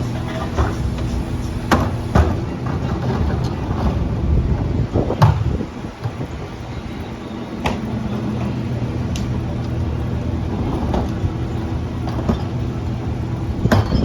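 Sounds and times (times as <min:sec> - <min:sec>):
garbage truck engine running: 0:00.0 - 0:14.0
sharp knocks and clanks: 0:00.2 - 0:04.0, 0:05.1 - 0:06.3, 0:13.6 - 0:14.0.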